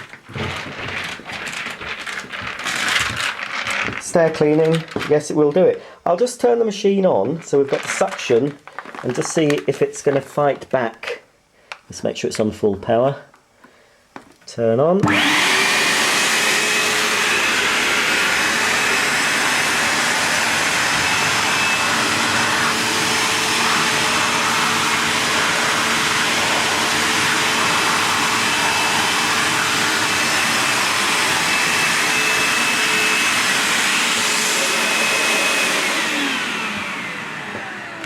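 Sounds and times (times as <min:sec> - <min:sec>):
carpet washer vacuum running: 0:00.0 - 0:04.5, 0:15.0 - 0:38.0.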